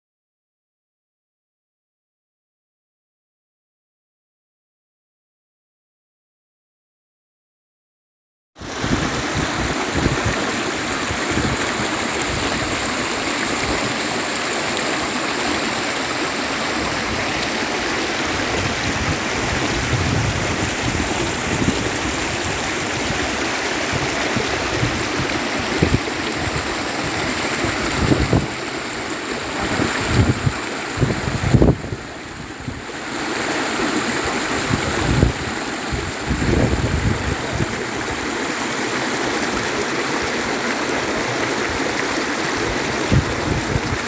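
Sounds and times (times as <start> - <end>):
stream water rushing: 8.6 - 44.0
wind buffeting microphone: 8.7 - 32.8, 34.2 - 38.3, 41.1 - 44.0.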